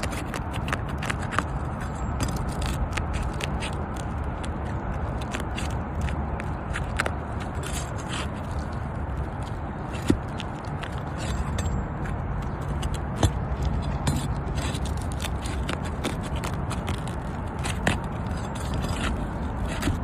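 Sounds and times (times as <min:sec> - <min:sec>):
pry tool scraping roof shingles: 0:09.8 - 0:20.0.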